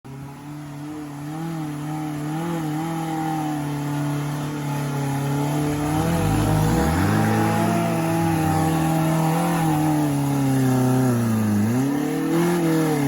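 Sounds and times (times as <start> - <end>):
off-road vehicle engine straining: 0.1 - 13.0
low rumble: 5.5 - 9.1.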